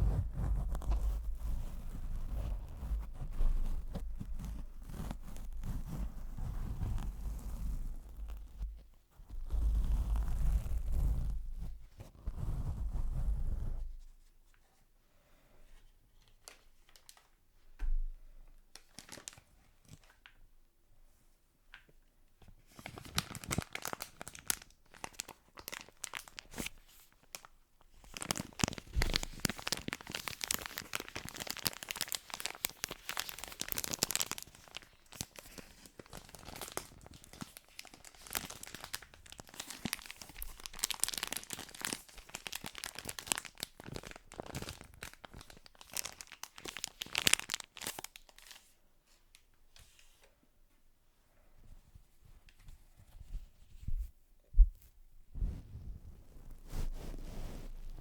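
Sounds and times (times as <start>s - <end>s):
material crinkling and crumpling: 0.0s - 14.7s, 16.2s - 17.4s, 18.7s - 20.4s, 21.7s - 50.3s, 52.2s - 58.0s
soft low thump: 54.0s - 55.9s.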